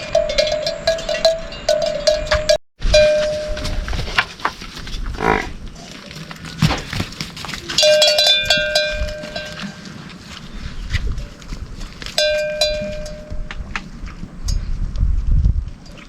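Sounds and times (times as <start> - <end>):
livestock bells clanking: 0.0 - 4.2, 7.7 - 10.4, 12.1 - 13.8
cow mooing: 5.2 - 5.6.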